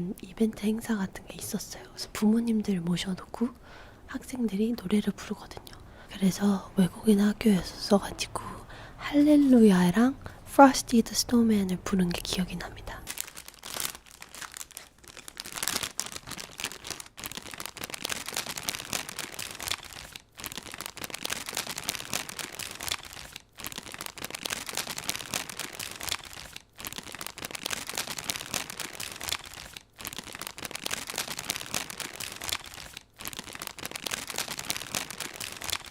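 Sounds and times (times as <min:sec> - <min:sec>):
packaging crinkling and tearing: 0:12.9 - 0:35.9.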